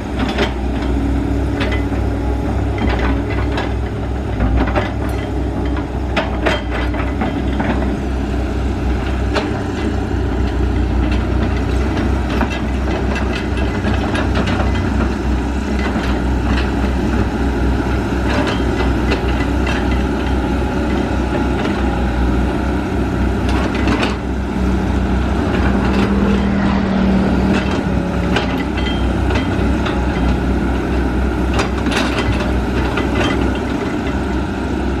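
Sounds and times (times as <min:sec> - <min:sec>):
excavator engine running: 0:00.0 - 0:35.0
clanks and knocks: 0:01.6 - 0:08.0, 0:09.3 - 0:16.9, 0:23.4 - 0:24.2, 0:25.4 - 0:26.8, 0:27.5 - 0:34.2.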